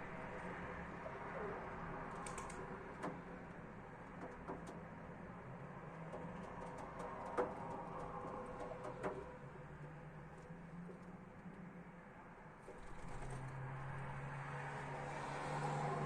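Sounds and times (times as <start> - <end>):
low hum of city traffic: 0.0 - 16.0
pigeons tapping on feeder: 6.1 - 9.2.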